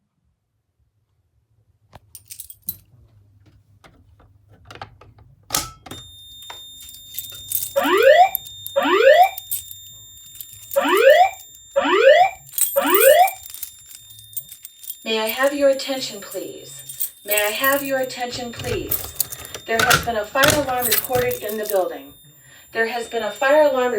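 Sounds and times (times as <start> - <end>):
fire alarm whoop tone: 7.7 - 10.2, 10.8 - 13.4.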